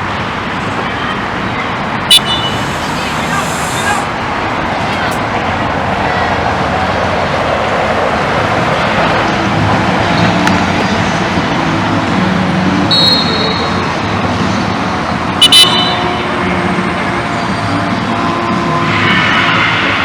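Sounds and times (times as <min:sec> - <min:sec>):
road traffic noise: 0:00.0 - 0:20.0
sharp whistle blasts: 0:02.1 - 0:04.2, 0:12.9 - 0:13.9
short high whistle: 0:02.1 - 0:04.2, 0:12.9 - 0:13.8.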